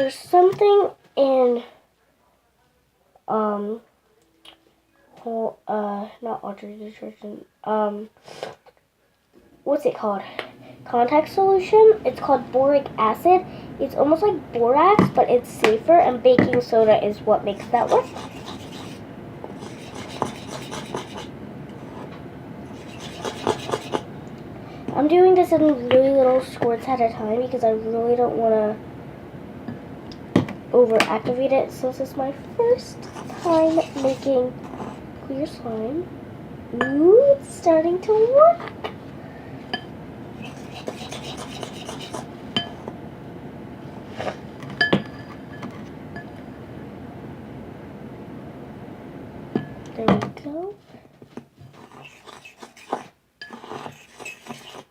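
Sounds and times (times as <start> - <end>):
fork stirring and scraping glue: 17.6 - 22.1, 22.7 - 24.1, 32.9 - 35.0, 40.4 - 42.3, 51.7 - 54.9.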